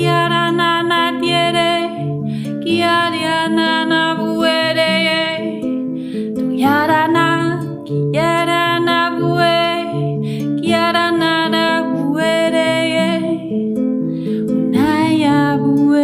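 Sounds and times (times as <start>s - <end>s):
harp plucked in a repeating pattern: 0.0s - 16.0s
person singing long wordless tones: 14.8s - 16.0s.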